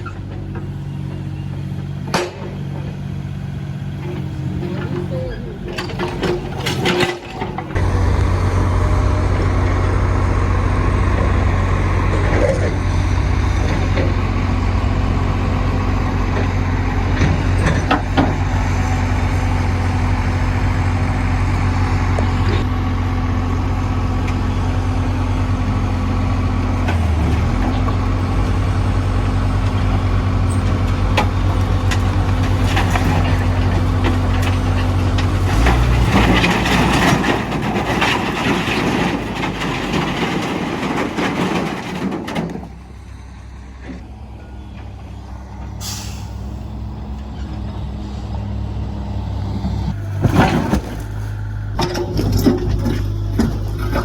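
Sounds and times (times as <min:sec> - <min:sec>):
heavy equipment diesel engine: 0:00.0 - 0:54.0
metal knocks and clanks: 0:04.0 - 0:07.8, 0:26.8 - 0:42.8, 0:49.9 - 0:54.0.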